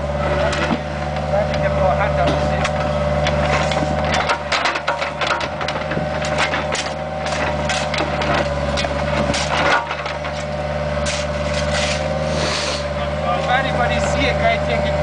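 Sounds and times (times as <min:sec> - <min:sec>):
mini excavator running: 0:00.0 - 0:15.0
asphalt cracking and crunching: 0:00.4 - 0:12.2.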